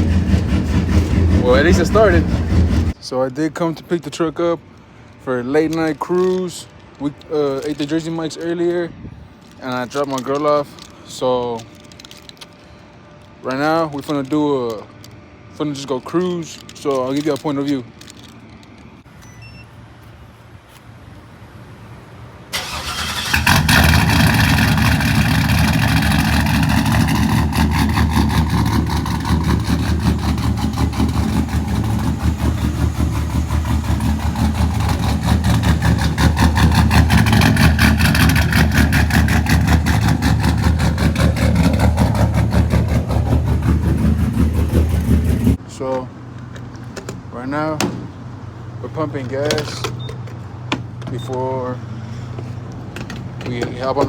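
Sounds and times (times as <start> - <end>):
truck engine starting and idling: 0.0 - 3.0, 22.4 - 45.6.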